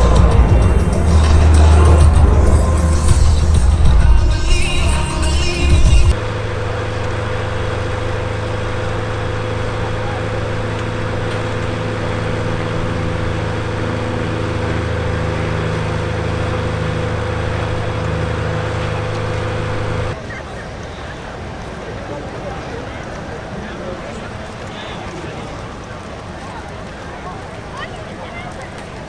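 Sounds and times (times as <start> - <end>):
aircraft engine running: 0.0 - 20.2.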